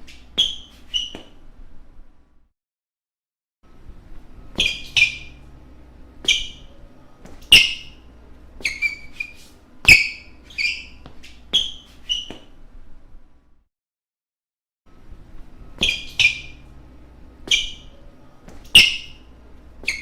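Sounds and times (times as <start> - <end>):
basketball shoes squeaking: 0.0 - 1.4, 4.5 - 5.6, 6.2 - 12.6, 15.7 - 16.8, 17.4 - 20.0.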